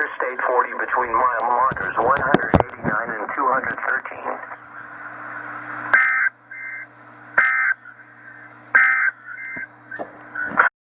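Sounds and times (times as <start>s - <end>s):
low hum: 0.1s - 10.7s
two-tone digital squawks: 5.9s - 7.8s, 8.8s - 9.7s.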